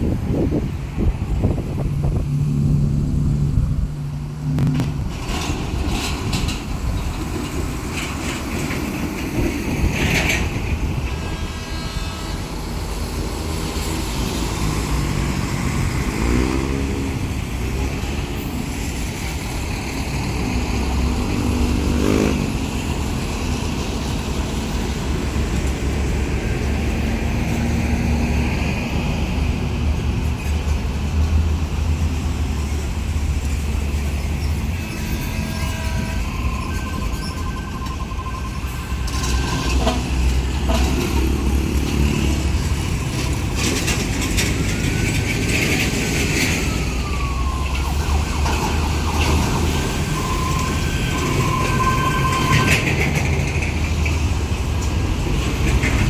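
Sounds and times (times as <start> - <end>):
diesel engine running: 0.0 - 8.1.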